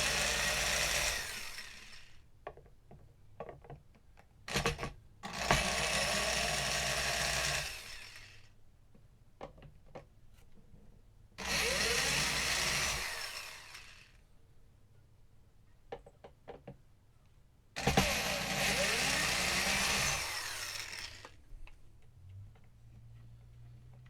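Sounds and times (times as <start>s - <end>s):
power drill driving screws: 0.0s - 2.1s, 4.5s - 8.4s, 11.4s - 14.2s, 17.8s - 21.4s.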